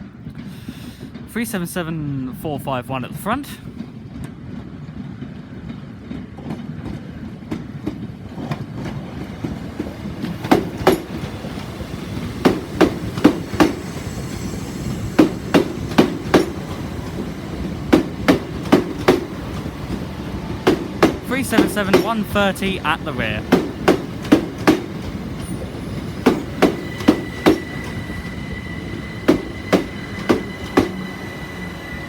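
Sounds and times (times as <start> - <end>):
low train rumble: 0.0 - 32.0
train wheels clicking over rail joint: 6.2 - 28.2, 29.1 - 31.0.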